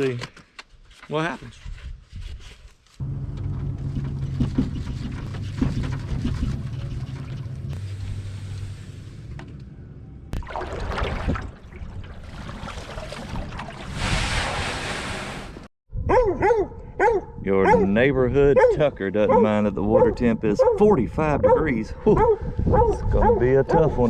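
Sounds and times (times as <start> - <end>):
wind: 0.0 - 24.0
low motor hum: 3.0 - 10.4
water rushing hiss: 13.8 - 15.7.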